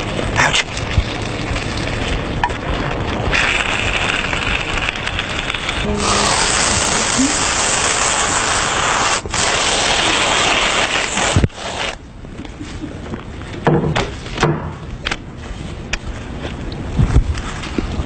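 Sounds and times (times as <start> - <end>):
snack crackling and rustling: 0.0 - 7.6.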